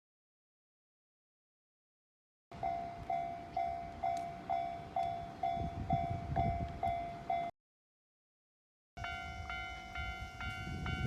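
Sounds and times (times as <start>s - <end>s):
level crossing warning bell ringing: 2.6s - 7.5s, 9.0s - 11.0s.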